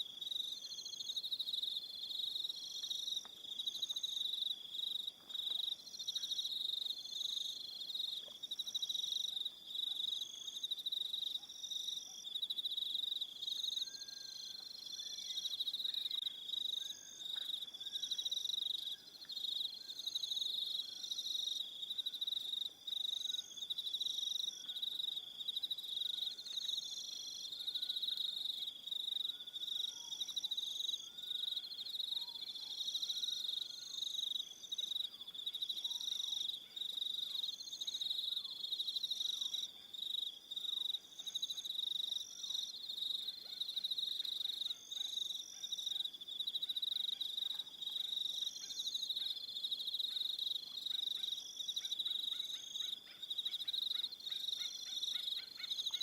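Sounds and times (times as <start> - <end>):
high cricket chirps: 0.0 - 56.0.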